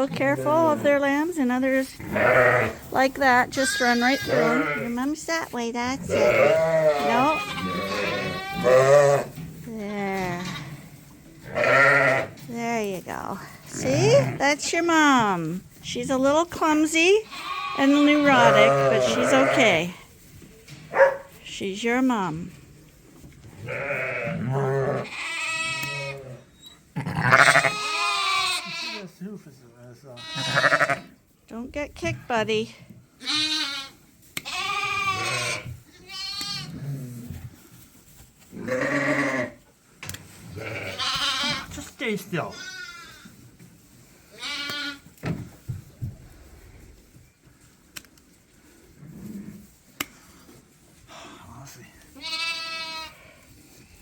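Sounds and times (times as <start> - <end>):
sheep and lamb bleating: 2.0 - 2.8, 3.5 - 5.1, 6.0 - 9.4, 11.4 - 12.4, 17.2 - 20.0, 23.6 - 29.1, 30.2 - 31.2, 33.2 - 36.8, 38.6 - 39.6, 40.5 - 41.8, 42.4 - 43.3, 44.3 - 45.1, 52.2 - 53.4.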